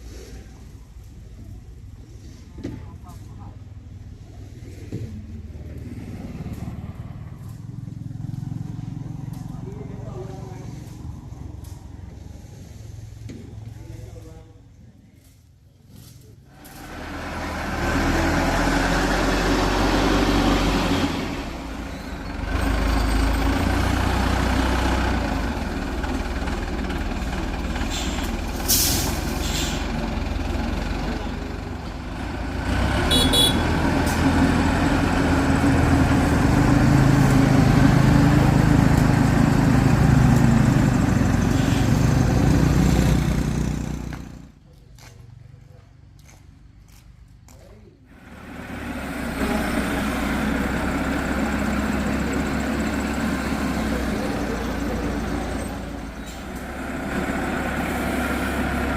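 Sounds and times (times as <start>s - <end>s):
heavy diesel engine working: 16.5s - 44.6s, 48.1s - 58.9s.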